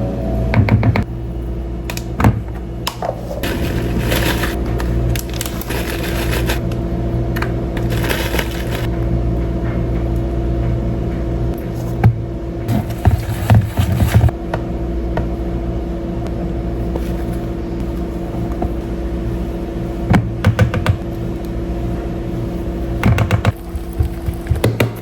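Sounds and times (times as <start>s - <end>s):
steady low hum: 0.0s - 25.0s
scraping or stirring: 3.2s - 6.6s.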